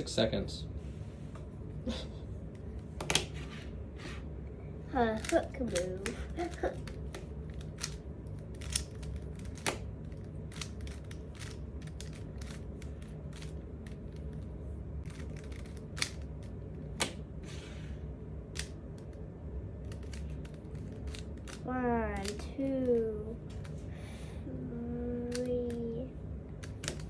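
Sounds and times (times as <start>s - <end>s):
plastic puzzle cube clicking: 5.2s - 14.4s, 15.1s - 17.2s, 19.9s - 21.6s, 25.3s - 25.8s, 26.6s - 27.0s.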